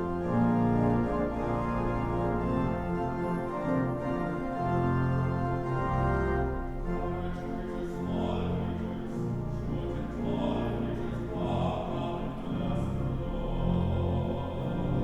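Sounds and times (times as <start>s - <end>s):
organ chords: 0.0s - 15.0s
person singing classically: 6.7s - 15.0s.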